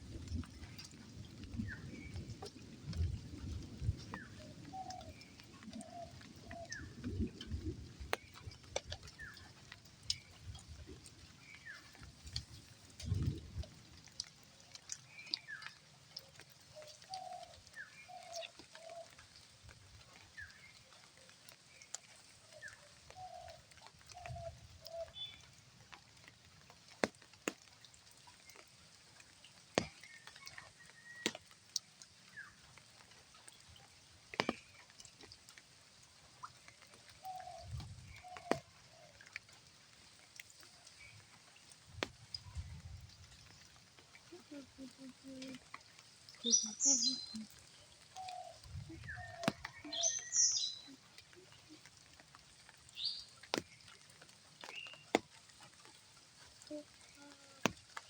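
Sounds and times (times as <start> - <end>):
high bird chirps: 46.4 - 47.4.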